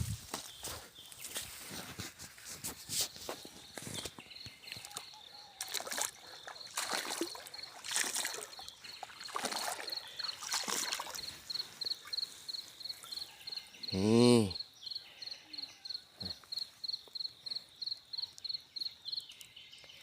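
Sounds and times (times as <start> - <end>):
insect chirping: 3.0 - 19.8
water sloshing and splashing: 4.7 - 12.3.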